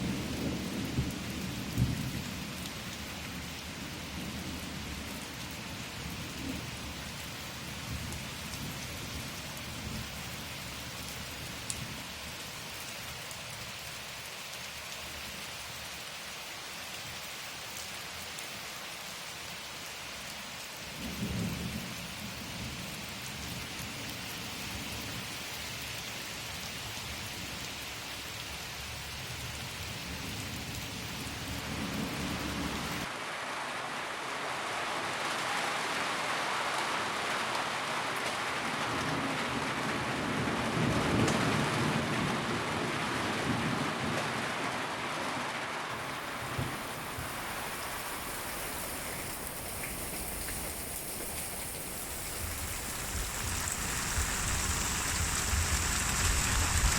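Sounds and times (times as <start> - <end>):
low rolling thunder: 0.0 - 2.3, 46.0 - 56.9
steady rain: 0.0 - 56.9.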